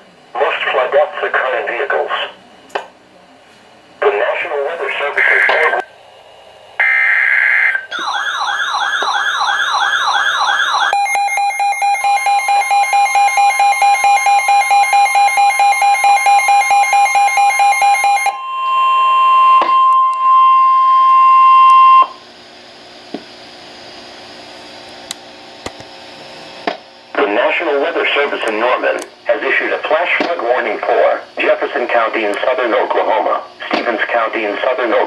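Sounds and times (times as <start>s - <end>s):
siren-like warble tone: 6.8s - 22.2s
steady high tone: 6.8s - 22.2s
beeping tone: 10.9s - 22.2s.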